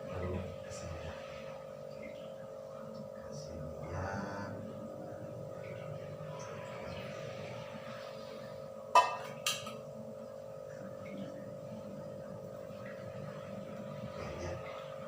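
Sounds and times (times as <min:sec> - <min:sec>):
steady hum: 0:00.0 - 0:15.0
kitchenware clinking: 0:09.0 - 0:09.8.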